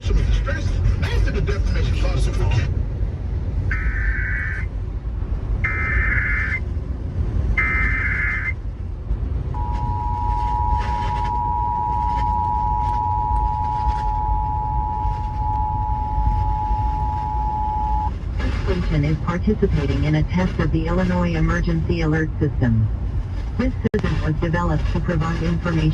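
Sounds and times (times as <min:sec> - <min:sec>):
steady two-tone alert signal: 0:09.6 - 0:19.0.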